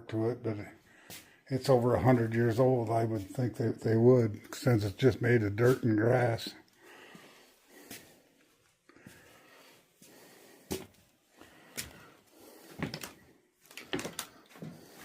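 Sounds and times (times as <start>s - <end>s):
knocks and clunks in a room: 8.9s - 15.0s.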